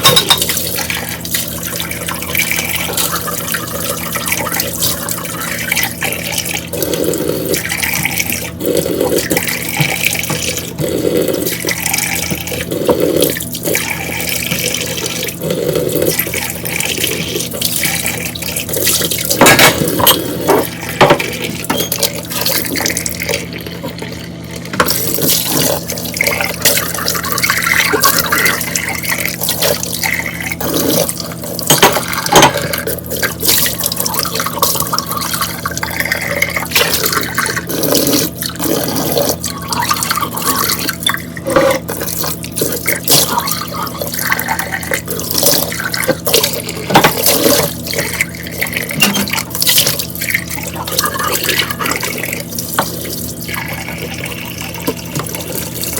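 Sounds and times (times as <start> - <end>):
dishware clinking: 0.0 - 0.6, 49.0 - 49.4
tap running into a sink: 24.7 - 25.1, 48.8 - 50.0, 54.8 - 55.9.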